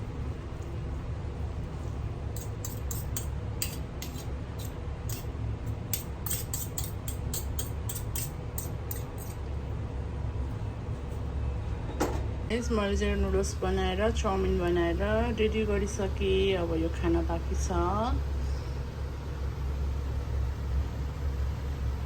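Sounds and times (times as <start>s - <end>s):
utensil scraping a pan: 2.4s - 5.3s.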